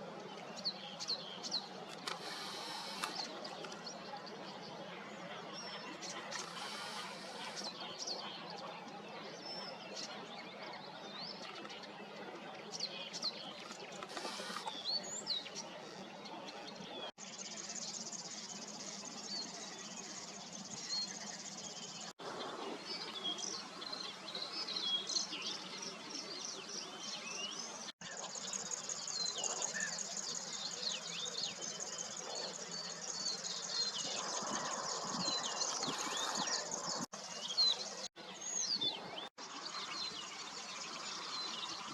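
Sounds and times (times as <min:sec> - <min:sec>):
small birds chirping: 0:00.4 - 0:12.0, 0:12.6 - 0:41.9
outdoor background hiss: 0:01.2 - 0:03.6.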